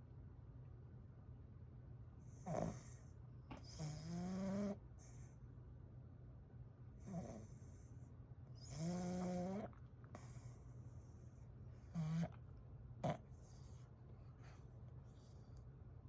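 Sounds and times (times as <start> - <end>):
dog snoring: 2.3 - 5.2, 7.0 - 7.9, 8.6 - 10.6, 11.8 - 12.4, 13.0 - 13.8.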